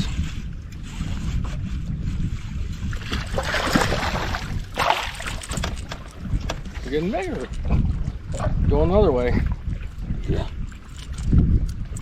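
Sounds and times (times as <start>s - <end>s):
water slapping boat hull: 0.0s - 12.0s
wind buffeting microphone: 0.0s - 12.0s.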